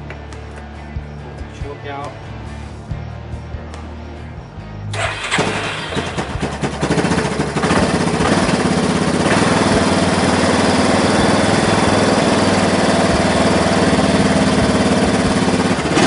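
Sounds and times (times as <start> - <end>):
engine sputtering and running: 4.9 - 16.0.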